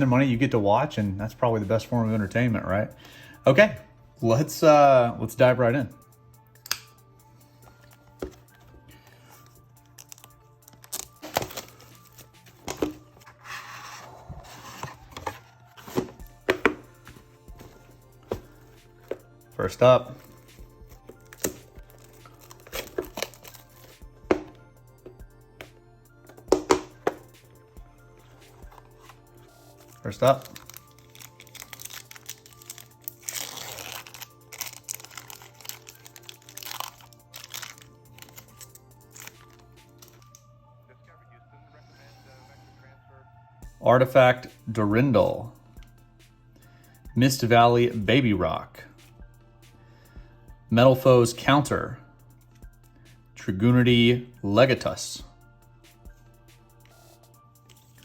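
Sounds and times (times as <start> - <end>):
faint background music: 0.0 - 58.0
packaging tearing: 10.0 - 12.3, 29.8 - 40.4
taps and knocks on packaging: 26.4 - 27.2.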